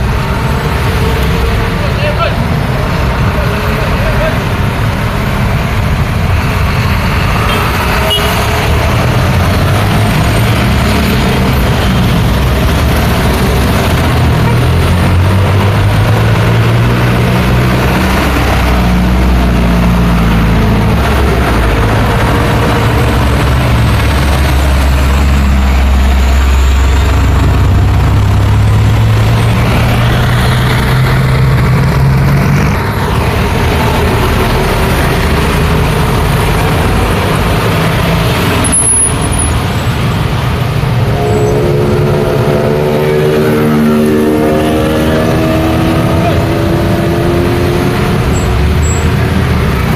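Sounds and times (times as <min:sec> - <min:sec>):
large engine humming: 0:00.0 - 0:49.9
passing vehicles rushing: 0:00.0 - 0:49.9
engine revving up: 0:06.5 - 0:49.9.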